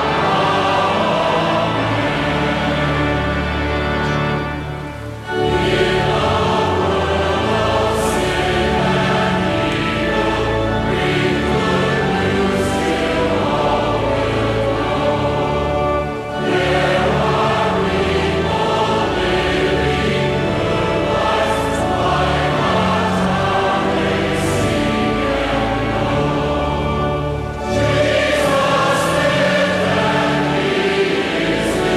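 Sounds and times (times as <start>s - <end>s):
choir singing: 0.0s - 31.9s
sustained low accompaniment: 0.0s - 31.9s.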